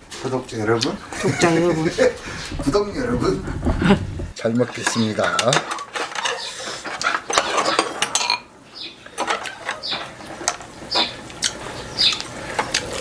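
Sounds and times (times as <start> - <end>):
utensils clinking against dishes: 4.4 - 13.0.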